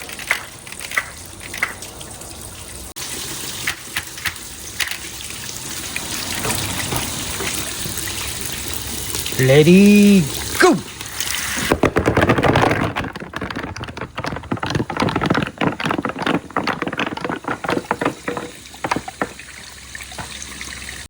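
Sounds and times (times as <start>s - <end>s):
water rushing down a track: 0.0s - 11.8s, 13.0s - 21.0s
marbles clicking along a track: 11.7s - 19.4s.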